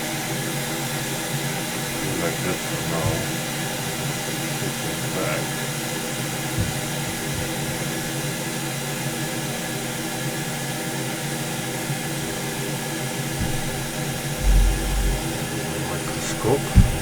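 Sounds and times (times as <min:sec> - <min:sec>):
hot air station hissing: 0:00.0 - 0:09.3, 0:11.6 - 0:17.0
constant hum: 0:01.7 - 0:08.3, 0:13.2 - 0:17.0.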